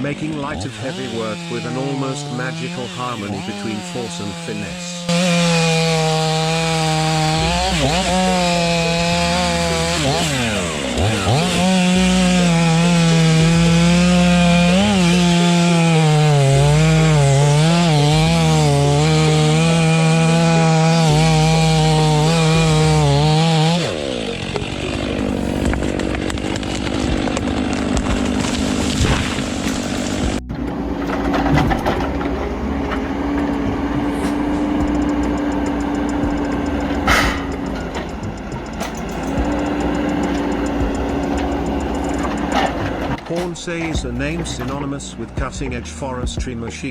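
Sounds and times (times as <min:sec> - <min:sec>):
chainsaw cutting wood: 0:00.0 - 0:46.9
steady mechanical noise: 0:19.8 - 0:46.9.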